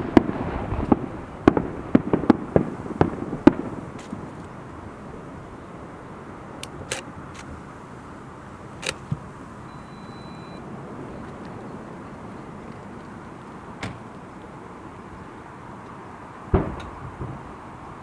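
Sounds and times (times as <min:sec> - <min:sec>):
firework pops: 0:00.0 - 0:04.6, 0:16.5 - 0:17.5
outdoor background hum: 0:00.0 - 0:18.0.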